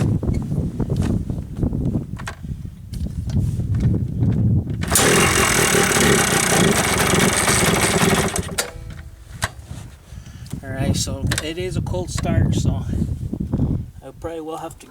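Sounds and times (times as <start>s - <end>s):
two-stroke engine starting: 4.8s - 9.0s.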